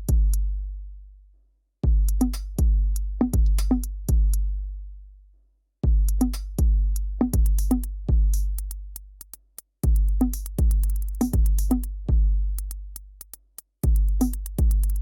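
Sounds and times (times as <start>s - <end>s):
electronic music with drum-machine beat: 9.8s - 11.9s, 13.8s - 15.0s.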